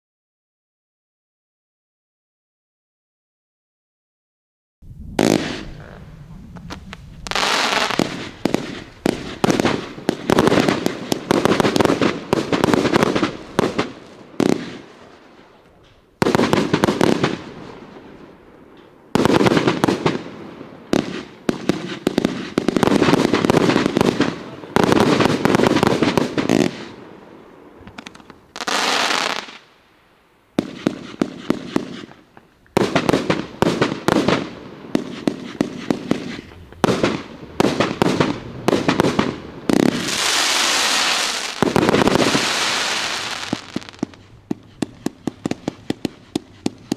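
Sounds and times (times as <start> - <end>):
firework cracks and pops: 4.9 - 29.8, 30.5 - 46.9.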